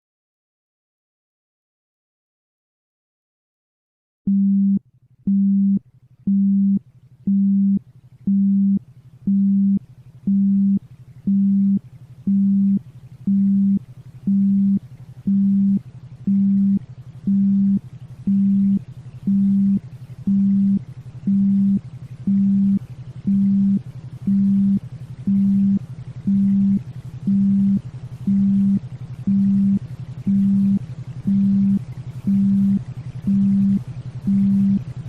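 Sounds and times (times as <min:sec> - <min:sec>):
pulsing synthesized low tone: 0:04.3 - 0:35.0
steady lower hum: 0:04.3 - 0:35.0.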